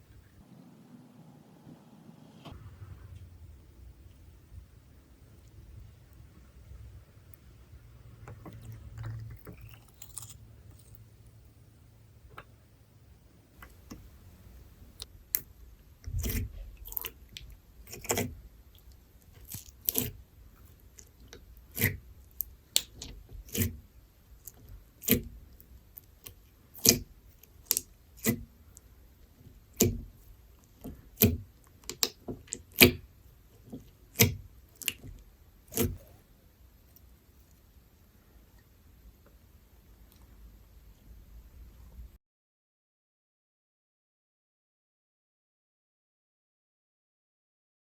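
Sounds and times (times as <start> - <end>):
faint low hum: 0.0 - 31.8.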